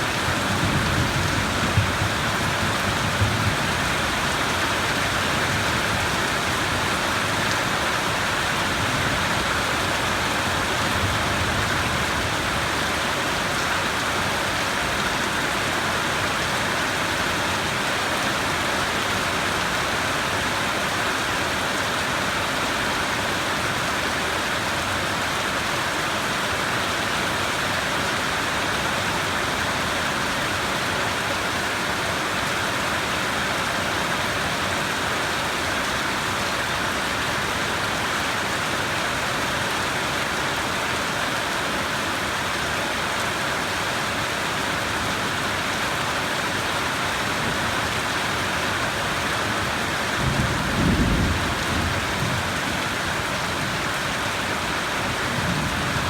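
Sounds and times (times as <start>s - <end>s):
steady rainfall: 0.0s - 56.0s
low rumble of thunder: 0.3s - 4.0s, 50.2s - 52.8s.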